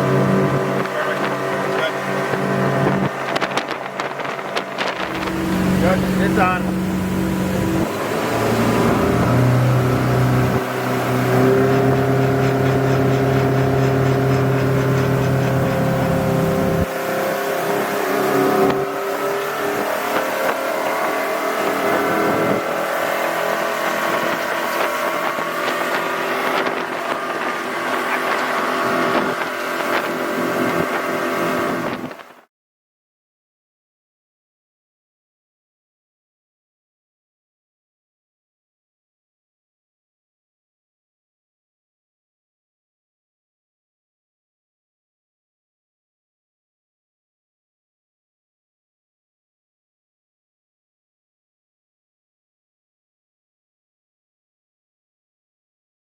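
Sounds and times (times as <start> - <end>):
boat engines running: 0.0 - 32.3.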